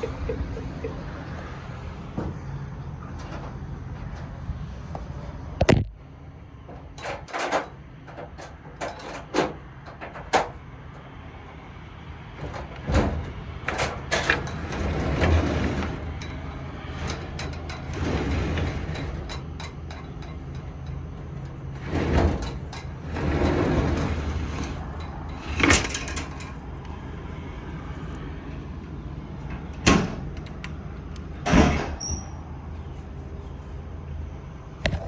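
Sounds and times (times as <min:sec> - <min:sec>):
metal doors clanking: 0:06.7 - 0:10.6, 0:12.3 - 0:26.6, 0:29.5 - 0:30.6, 0:31.4 - 0:32.4
rattling and scraping: 0:12.4 - 0:26.6.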